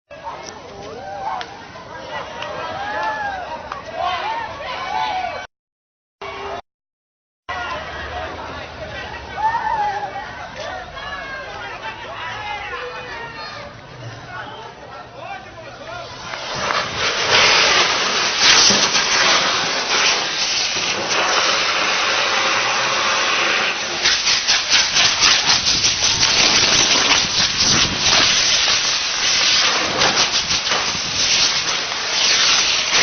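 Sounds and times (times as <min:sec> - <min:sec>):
fireworks hissing and sputtering: 0:15.7 - 0:33.0.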